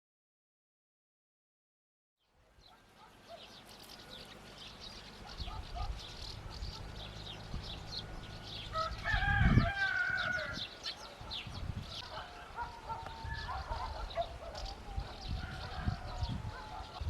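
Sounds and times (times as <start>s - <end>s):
small birds chirping: 2.2s - 17.0s
rooster crowing: 7.9s - 10.8s, 15.4s - 17.0s.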